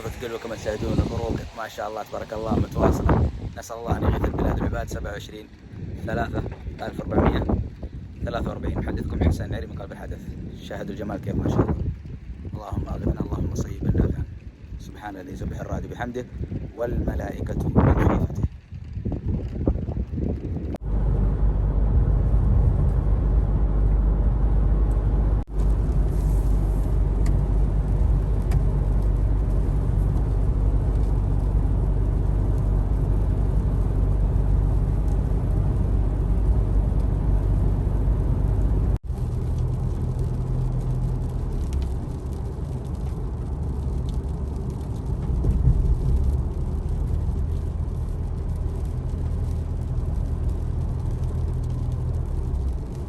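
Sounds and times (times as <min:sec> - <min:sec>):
car engine running: 0:20.8 - 0:53.0.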